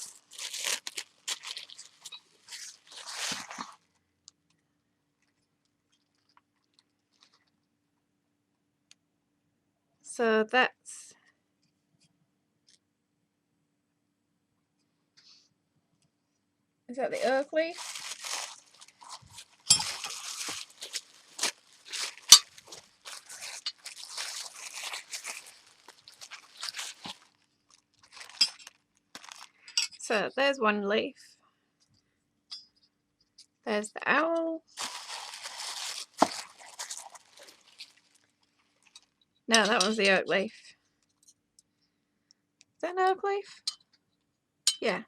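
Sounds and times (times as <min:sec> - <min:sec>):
packaging crinkling and tearing: 0:00.0 - 0:03.8, 0:17.2 - 0:29.6, 0:34.8 - 0:39.2.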